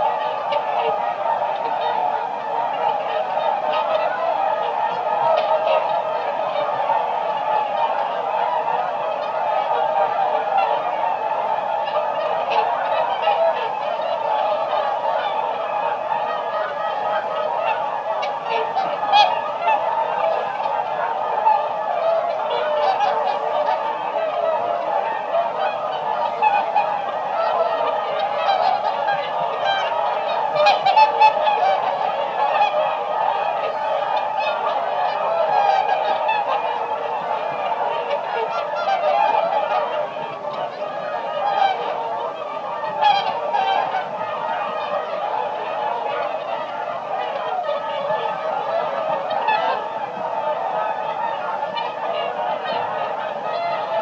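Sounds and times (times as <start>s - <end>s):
swans calling: 0.0s - 54.0s.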